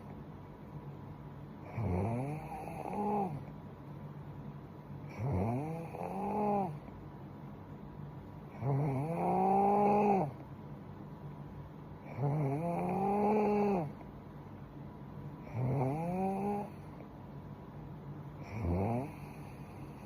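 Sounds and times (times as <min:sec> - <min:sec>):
woman snoring: 0:01.7 - 0:03.5, 0:05.1 - 0:06.8, 0:08.6 - 0:10.4, 0:12.1 - 0:14.0, 0:15.5 - 0:16.9, 0:18.4 - 0:20.0.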